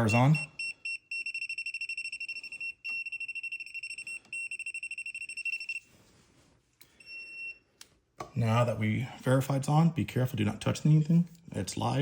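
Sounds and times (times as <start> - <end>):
voltage tester beeping: 0.0 - 5.8.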